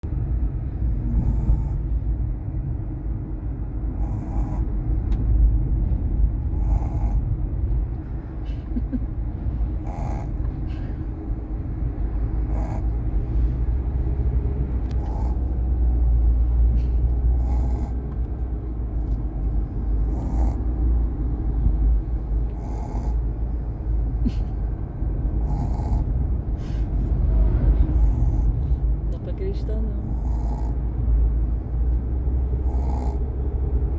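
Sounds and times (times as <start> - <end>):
steady low rumble: 0.0 - 33.9
dog snoring: 0.9 - 2.1, 3.9 - 4.8, 6.4 - 7.3, 9.8 - 10.8, 12.3 - 13.2, 14.1 - 16.2, 17.2 - 18.2, 19.9 - 21.1, 22.2 - 23.4, 25.3 - 26.2, 27.7 - 28.8, 30.0 - 30.9, 32.4 - 33.9.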